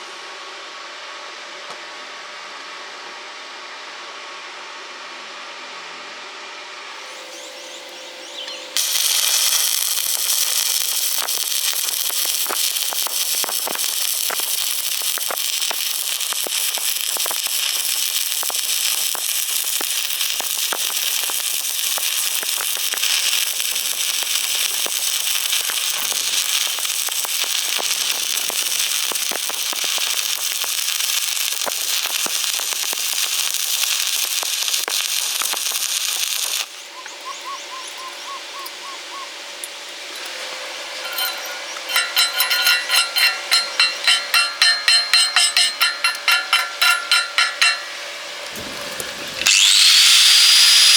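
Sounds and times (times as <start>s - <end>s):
welding arc crackling and hissing: 8.8s - 38.0s, 39.9s - 50.9s.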